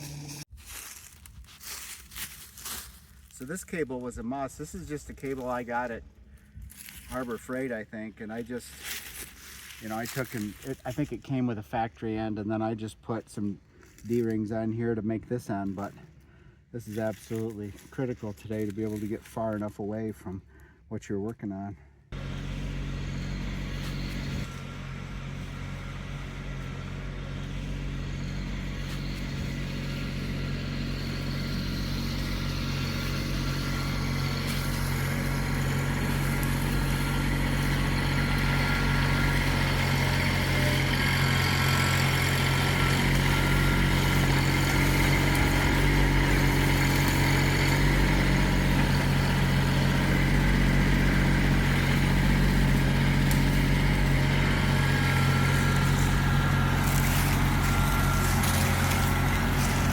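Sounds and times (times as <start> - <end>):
tractor diesel engine running: 0.0 - 20.9, 22.0 - 59.9.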